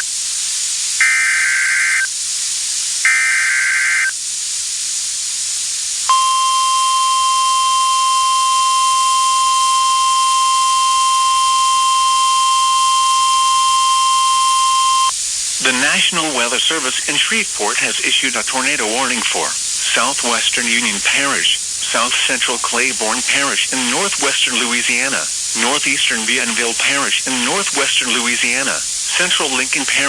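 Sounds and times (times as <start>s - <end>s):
buzzy digital data bursts: 5.7s - 30.0s
steady high alarm tone: 6.1s - 29.6s.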